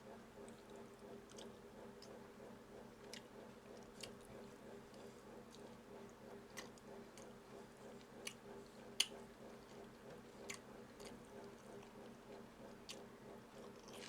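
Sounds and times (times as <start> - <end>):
person chewing food: 10.4 - 11.2, 13.6 - 14.0.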